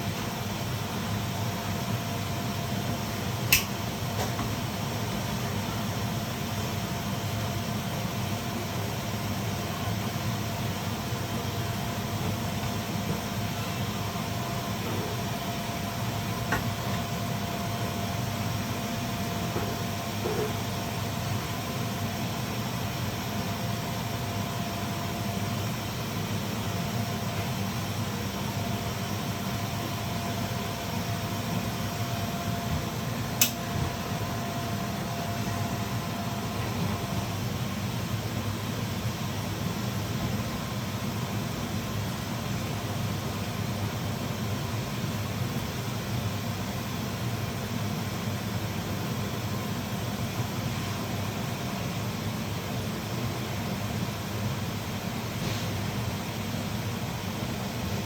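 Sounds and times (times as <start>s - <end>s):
steady mechanical hum: 0.0s - 58.0s
sharp click: 3.5s - 3.7s, 33.4s - 33.6s.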